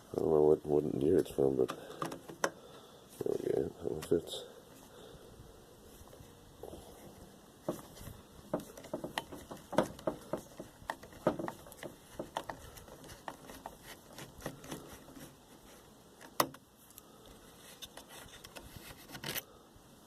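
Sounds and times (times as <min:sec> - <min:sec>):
hand tool clicks and rattles: 0:08.6 - 0:14.8.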